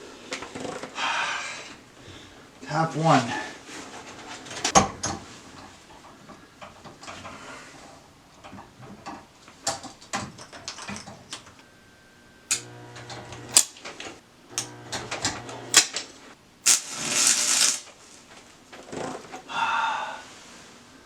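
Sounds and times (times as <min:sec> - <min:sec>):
low electrical hum: 0:00.0 - 0:19.6
hissing welding arc: 0:12.5 - 0:18.2
welding arc crackling: 0:12.5 - 0:18.4.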